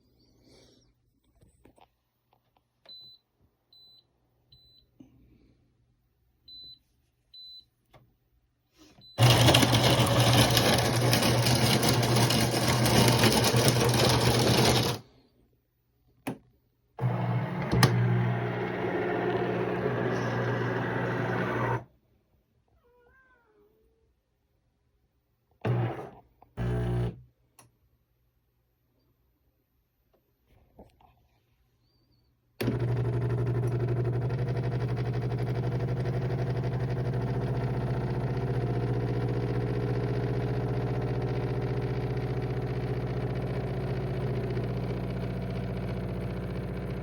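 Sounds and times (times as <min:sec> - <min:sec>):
coffee maker humming: 0:09.2 - 0:15.0, 0:17.0 - 0:21.9, 0:25.6 - 0:27.2, 0:32.6 - 0:47.0.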